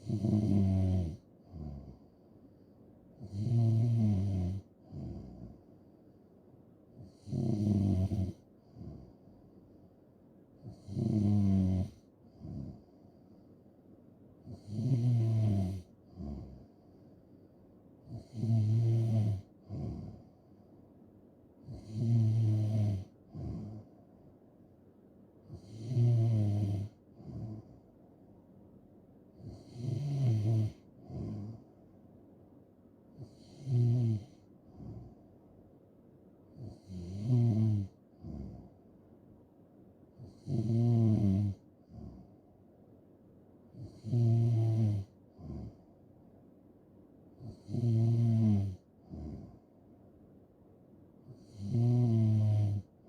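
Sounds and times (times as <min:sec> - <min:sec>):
person snoring: 0:00.0 - 0:02.0, 0:03.2 - 0:05.6, 0:07.0 - 0:09.1, 0:10.6 - 0:12.8, 0:14.5 - 0:16.6, 0:18.1 - 0:20.3, 0:21.7 - 0:23.9, 0:25.5 - 0:27.7, 0:29.4 - 0:31.6, 0:33.2 - 0:35.2, 0:36.6 - 0:38.7, 0:40.2 - 0:42.3, 0:43.8 - 0:45.8, 0:47.4 - 0:49.6, 0:51.3 - 0:52.9.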